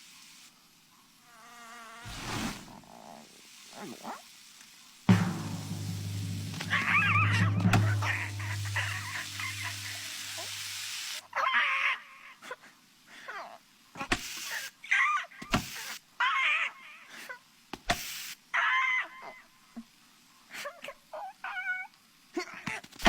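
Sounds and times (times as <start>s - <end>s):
sharp knocks: 5.1s - 10.5s.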